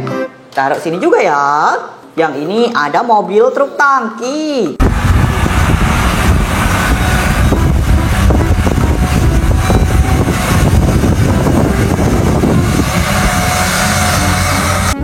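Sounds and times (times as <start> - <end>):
vehicle engine rumble: 4.8 - 15.0.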